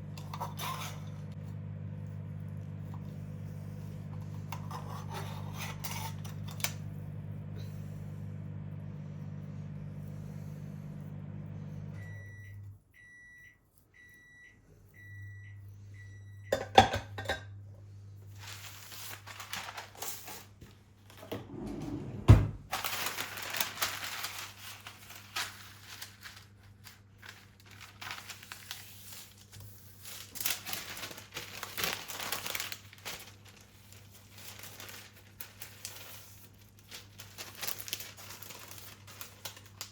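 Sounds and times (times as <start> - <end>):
microwave oven humming: 0.0 - 39.9
rustling and crinkling: 18.2 - 21.3, 22.6 - 39.9.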